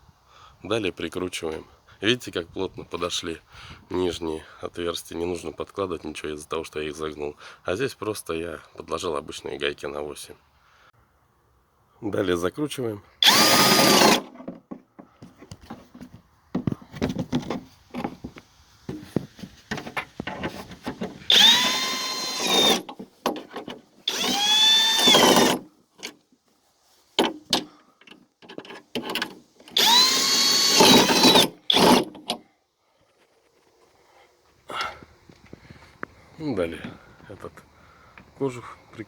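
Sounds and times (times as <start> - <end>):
cordless drill running: 13.2 - 14.3, 21.3 - 22.9, 24.1 - 25.6, 29.7 - 32.1
handling clicks and knocks: 22.8 - 24.0, 27.2 - 29.8.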